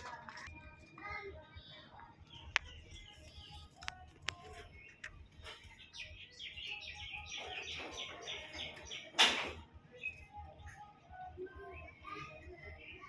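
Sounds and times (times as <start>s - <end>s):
small birds chirping: 0.0s - 13.0s
faint clicks: 2.4s - 5.2s.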